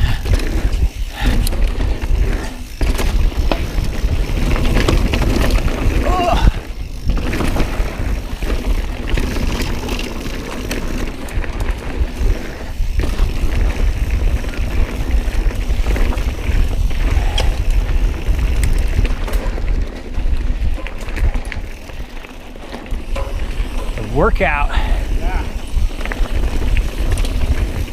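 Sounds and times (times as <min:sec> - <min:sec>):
wind on microphone: 0:00.0 - 0:08.6, 0:11.9 - 0:21.8
bike rattling: 0:00.0 - 0:27.9
tyres rumbling on rock and dirt: 0:00.0 - 0:27.9.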